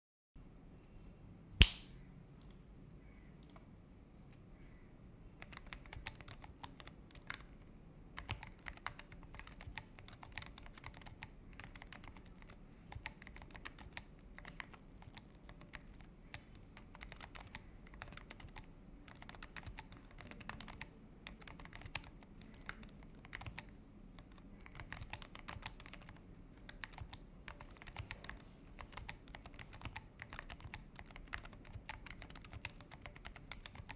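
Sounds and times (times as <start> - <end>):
sharp loud click: 1.6 - 2.0
mechanical keyboard clacks: 5.4 - 7.5, 8.2 - 33.9.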